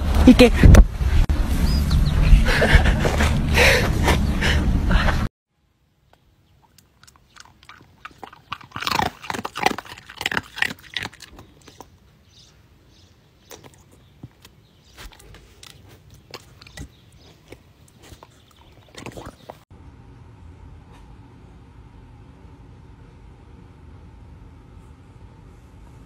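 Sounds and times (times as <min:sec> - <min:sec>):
dog chewing and crunching: 0:06.6 - 0:12.0, 0:13.4 - 0:19.6.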